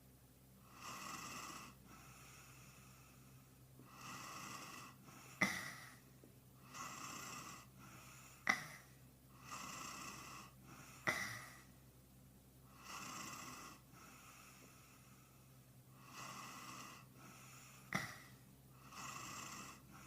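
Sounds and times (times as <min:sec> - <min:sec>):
man snoring: 0:00.6 - 0:03.2, 0:03.8 - 0:06.0, 0:06.6 - 0:08.8, 0:09.4 - 0:11.7, 0:12.7 - 0:15.1, 0:16.0 - 0:20.0
sharp snort: 0:05.4 - 0:06.0, 0:11.0 - 0:11.6, 0:17.9 - 0:18.4.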